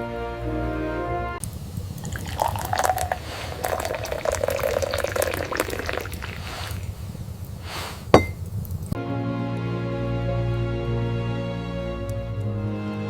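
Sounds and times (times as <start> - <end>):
liquid pouring into container: 1.4 - 7.4
small splashing drips: 1.4 - 7.6.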